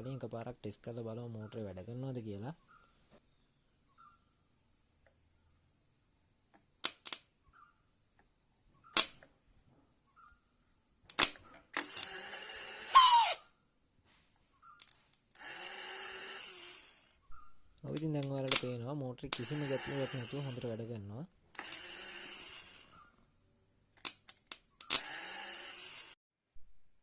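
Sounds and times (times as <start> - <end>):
sharp clicks: 6.8 - 7.3, 17.6 - 20.6, 21.5 - 23.0, 24.0 - 25.4
starter motor whining: 11.8 - 13.4, 15.4 - 17.2, 19.4 - 20.9, 21.5 - 23.1, 24.8 - 26.2.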